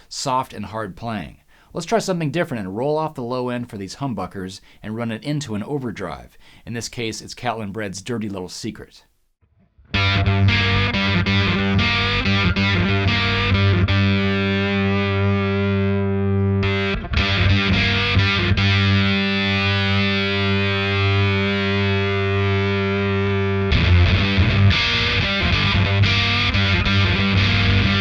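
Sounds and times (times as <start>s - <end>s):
overdriven electric guitar chords: 9.5s - 28.0s.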